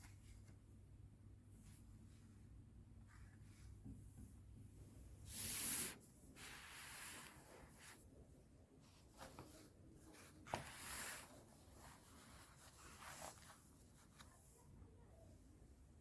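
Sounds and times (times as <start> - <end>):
soft rustling scrapes: 5.2 - 14.7.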